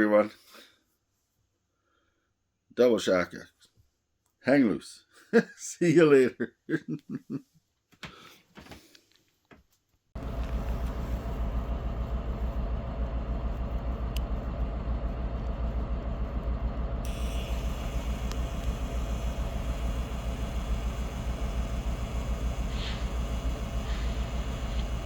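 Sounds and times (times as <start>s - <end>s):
steady low rumble: 10.2s - 25.0s.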